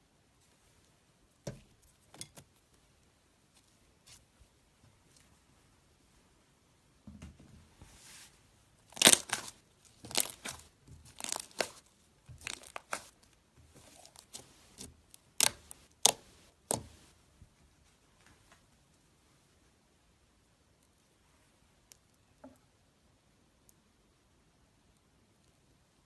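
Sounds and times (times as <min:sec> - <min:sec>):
slime crackling and tearing: 0:08.8 - 0:17.0.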